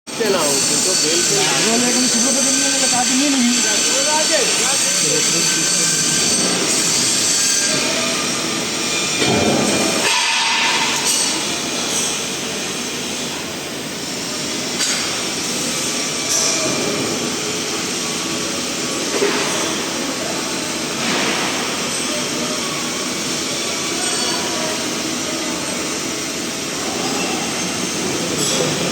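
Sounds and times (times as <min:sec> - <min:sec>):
industrial machine noise: 0:00.1 - 0:28.9.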